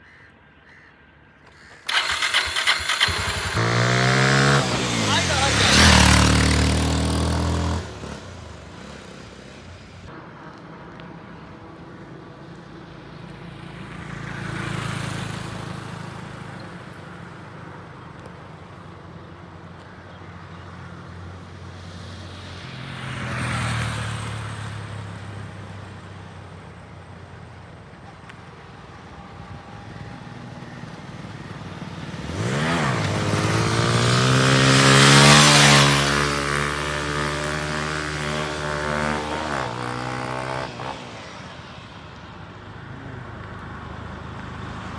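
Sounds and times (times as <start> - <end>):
road noise: 0.0 - 44.9
vehicles passing: 0.5 - 44.9
motorcycle engine revving: 1.7 - 10.1, 31.6 - 41.4.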